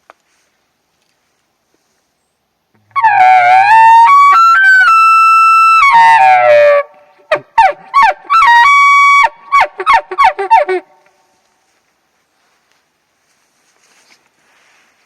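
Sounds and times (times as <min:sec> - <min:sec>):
elk bugling: 0:02.9 - 0:10.9.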